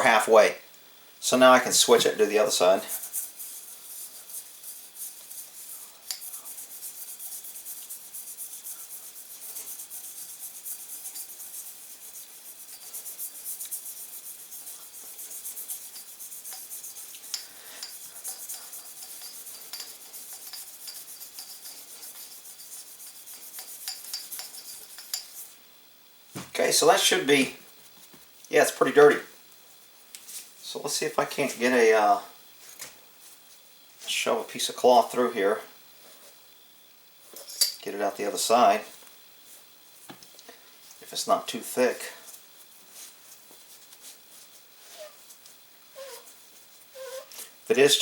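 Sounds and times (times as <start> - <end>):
toothbrush scrubbing metal tube: 1.8 - 25.6.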